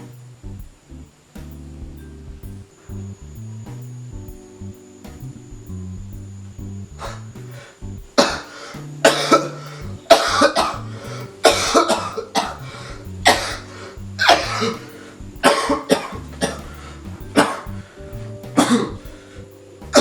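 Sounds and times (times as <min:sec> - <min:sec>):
background music: 0:00.0 - 0:20.0
person coughing: 0:08.2 - 0:12.7, 0:13.3 - 0:13.6, 0:14.2 - 0:14.8, 0:15.4 - 0:16.7, 0:17.4 - 0:17.6, 0:18.6 - 0:19.0.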